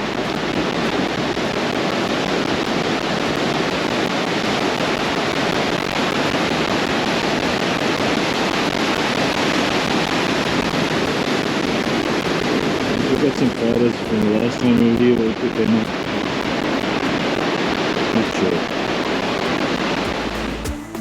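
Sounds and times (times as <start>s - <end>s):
surf breaking on sandy beach: 0.0s - 20.5s.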